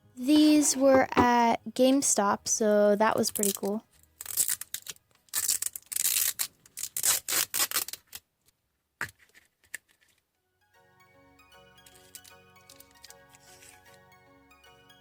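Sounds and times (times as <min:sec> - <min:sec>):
plastic packaging crinkling and tearing: 0:03.3 - 0:08.2.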